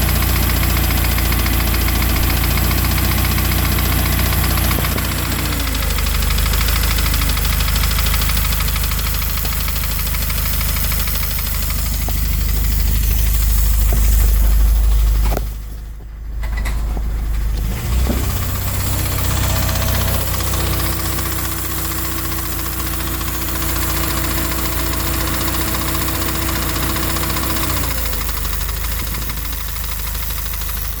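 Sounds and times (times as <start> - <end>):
car engine idling: 0.0 - 31.0
engine knocking: 0.0 - 31.0
steady whine: 10.2 - 25.3.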